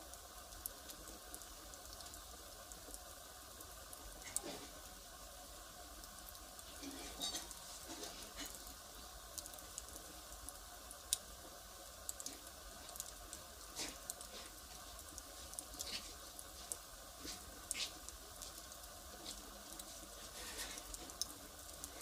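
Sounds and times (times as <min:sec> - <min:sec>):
wood fire crackling: 0:00.0 - 0:22.0.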